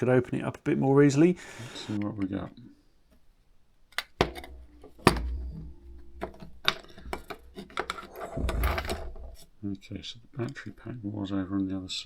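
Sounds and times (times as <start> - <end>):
low handling rumble: 4.5 - 9.6.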